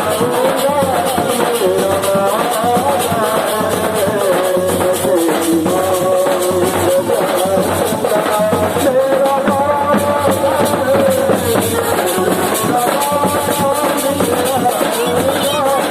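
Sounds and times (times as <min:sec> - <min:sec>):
man singing: 0:00.0 - 0:15.9
shaker-like rhythmic beat: 0:00.0 - 0:15.9.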